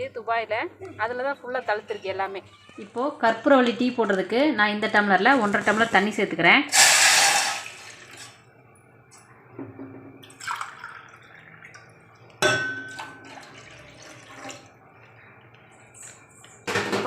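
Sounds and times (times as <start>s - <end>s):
water pouring into a pan: 6.7s - 8.4s, 10.2s - 12.3s, 13.0s - 14.8s
water dripping: 10.2s - 15.6s
vessel clink: 12.4s - 13.3s.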